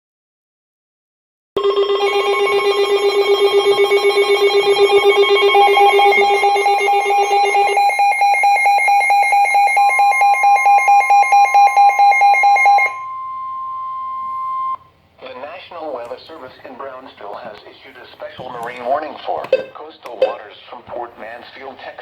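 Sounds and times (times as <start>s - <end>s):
buzzy electronic alarm pulsing: 1.6s - 14.8s
steady high electronic tone: 1.6s - 14.8s.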